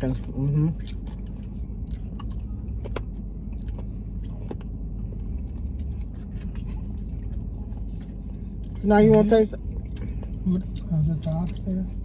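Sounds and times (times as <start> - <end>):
steady low rumble: 0.0 - 12.0
clicks and smacks of eating: 0.8 - 8.8.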